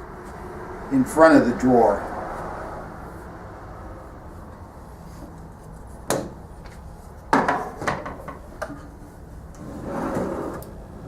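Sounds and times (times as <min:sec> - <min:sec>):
drawer sliding: 0:09.6 - 0:10.7.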